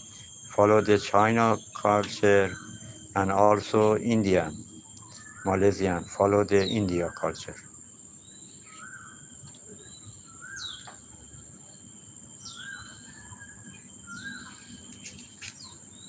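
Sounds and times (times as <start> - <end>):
high-pitched insect drone: 0.0 - 16.0.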